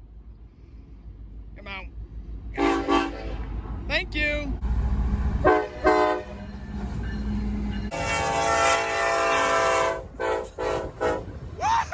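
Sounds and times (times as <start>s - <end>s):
locomotive air horn blasts: 2.6s - 3.6s, 5.4s - 6.4s, 7.9s - 11.4s.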